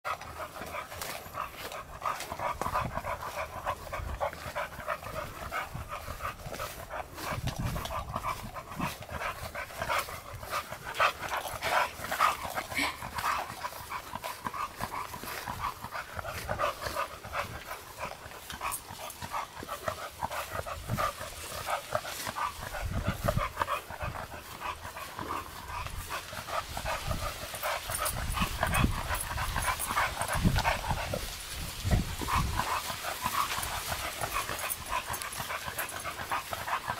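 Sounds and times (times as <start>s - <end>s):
dog panting: 0.0s - 36.9s
rustling: 0.2s - 36.9s.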